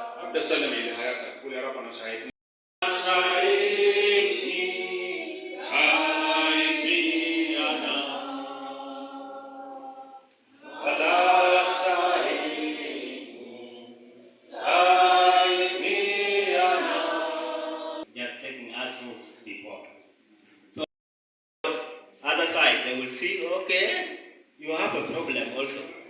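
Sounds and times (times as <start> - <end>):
group singing worship chorus: 2.8 - 18.1.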